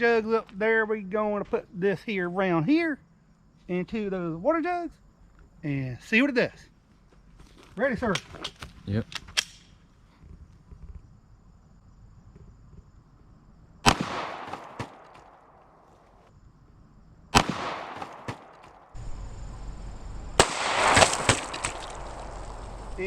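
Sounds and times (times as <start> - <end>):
faint sharp cracks: 7.4 - 9.8, 13.8 - 16.2, 17.4 - 19.0, 20.4 - 23.0
loud pistol shots: 13.8 - 15.5, 17.3 - 19.0, 20.4 - 22.3.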